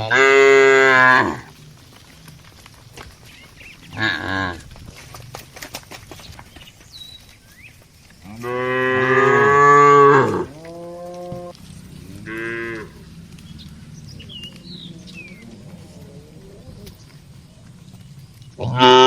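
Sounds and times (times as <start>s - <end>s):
cattle mooing: 0.0s - 1.6s, 3.9s - 4.8s, 8.2s - 19.0s.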